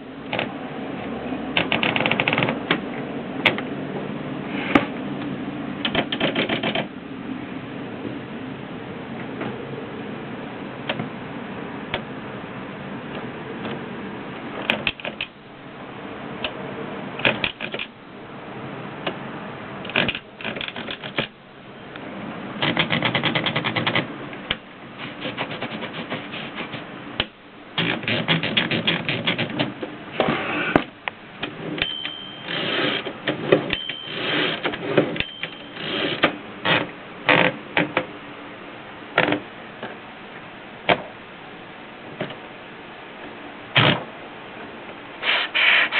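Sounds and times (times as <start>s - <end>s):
typewriter key strikes: 5.8s - 6.9s, 19.9s - 21.3s, 22.6s - 24.1s
short high steady tone: 31.8s - 32.5s.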